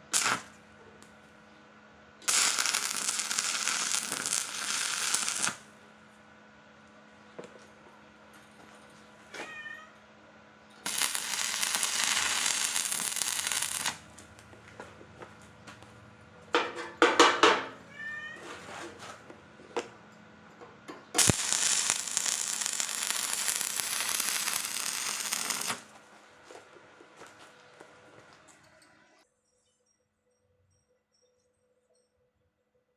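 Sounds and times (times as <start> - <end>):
harsh steady hissing noise: 0.0 - 0.5, 2.2 - 5.7, 10.8 - 14.2, 21.2 - 25.9
cat meowing: 9.4 - 10.0, 17.8 - 18.4.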